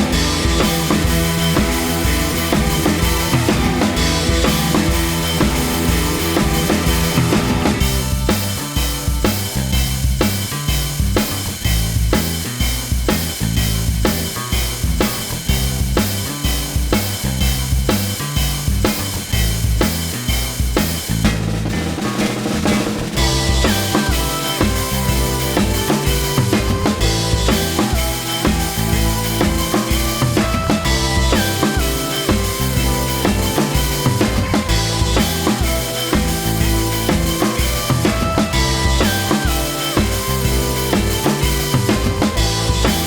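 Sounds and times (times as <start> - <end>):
music with drum beat: 0.0 - 43.0.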